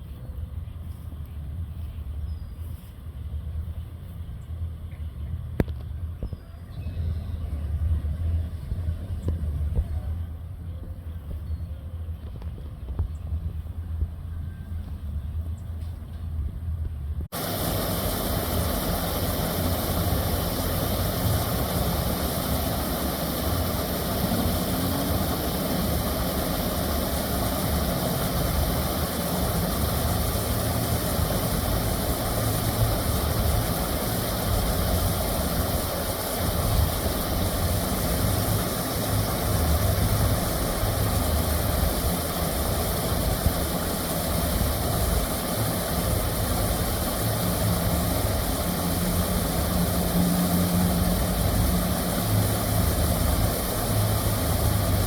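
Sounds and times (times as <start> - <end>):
water rushing over a dam: 17.4 - 55.0.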